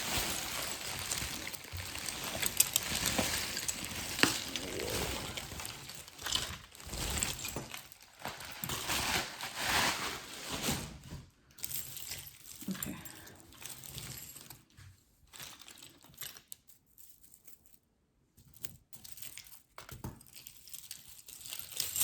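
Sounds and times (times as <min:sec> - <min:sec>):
jewelry clinking: 0:00.0 - 0:08.1
packaging rustling and crinkling: 0:00.0 - 0:11.4.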